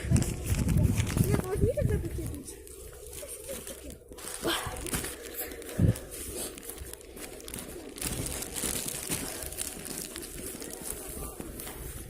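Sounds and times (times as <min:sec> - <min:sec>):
rustling and crinkling: 0:00.0 - 0:12.0.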